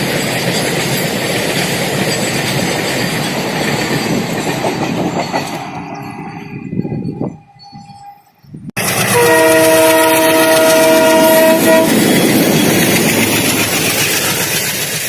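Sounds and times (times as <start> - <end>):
train rumble and wheel noise: 0.0 - 15.0
locomotive horn chord: 9.1 - 12.0.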